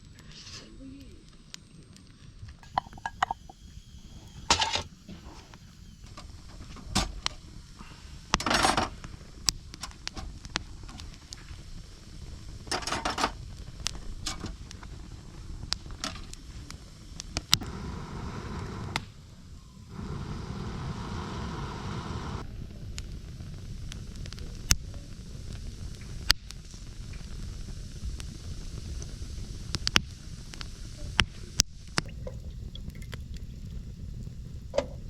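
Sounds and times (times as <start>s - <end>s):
steady hiss: 0.0s - 35.0s
cookware clinking and knocking: 2.6s - 3.6s, 4.5s - 4.9s
utensil scraping: 2.6s - 5.6s.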